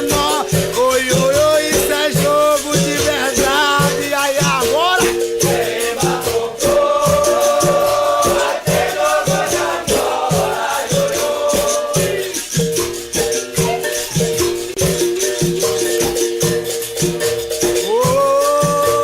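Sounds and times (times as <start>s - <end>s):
voices singing together: 0.0s - 13.0s
shaker rattling: 0.0s - 19.0s
steady drum beat: 0.0s - 19.0s.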